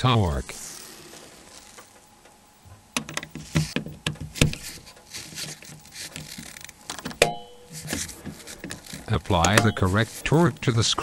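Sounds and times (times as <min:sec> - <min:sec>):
screwdriver clicks and taps: 0:03.0 - 0:05.0.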